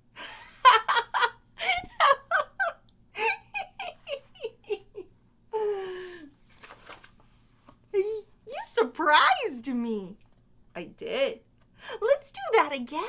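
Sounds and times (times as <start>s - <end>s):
person laughing: 0.2s - 6.2s.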